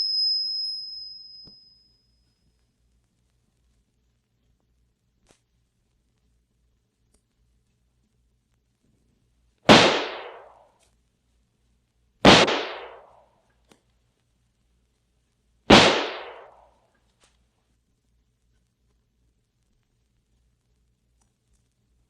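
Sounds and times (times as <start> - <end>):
rifle shots with echo: 9.7 - 10.6, 12.2 - 13.2, 15.7 - 16.6.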